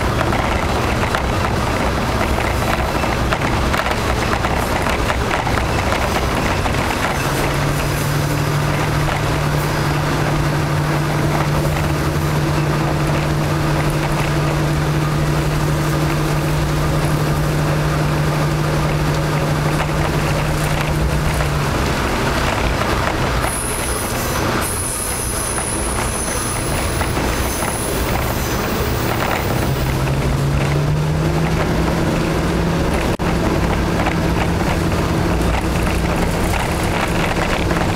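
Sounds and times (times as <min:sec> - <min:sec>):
diesel railcar engine: 0:00.0 - 0:37.9
wheels rumbling on rail: 0:00.0 - 0:37.9.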